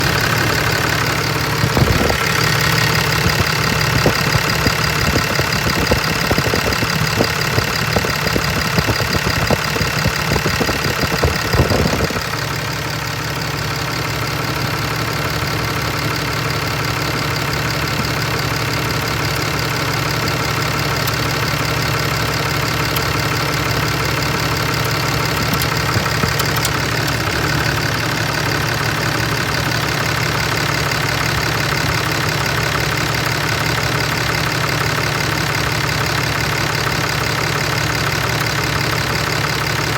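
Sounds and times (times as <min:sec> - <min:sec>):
diesel engine idling: 0:00.0 - 0:39.9
engine ticking: 0:00.0 - 0:39.9.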